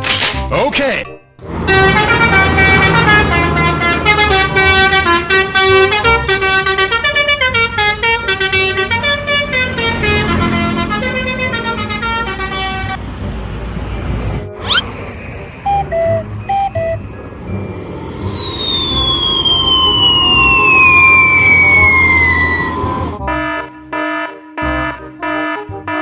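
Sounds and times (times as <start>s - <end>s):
musical bus horn melody: 1.4s - 26.0s.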